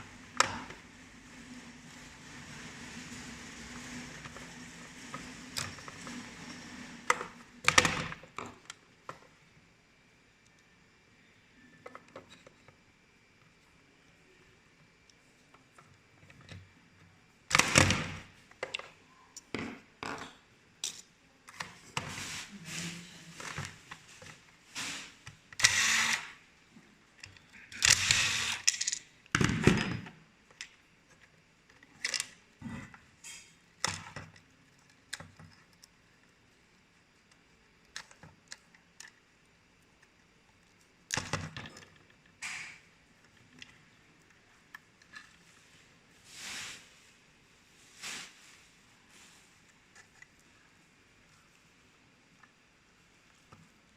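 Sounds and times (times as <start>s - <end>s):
plastic parts clicking and knocking: 27.2s - 32.4s, 33.8s - 36.0s.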